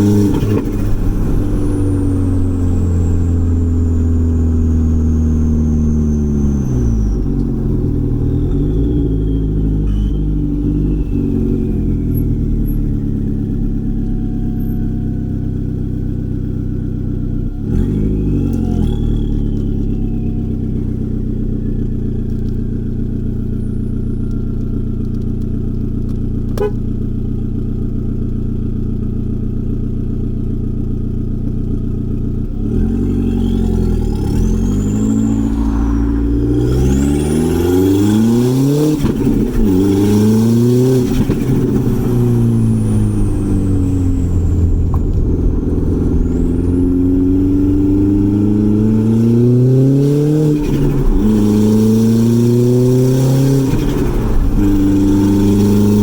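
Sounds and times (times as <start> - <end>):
turbo whine: 0.0 - 15.1, 32.5 - 56.0.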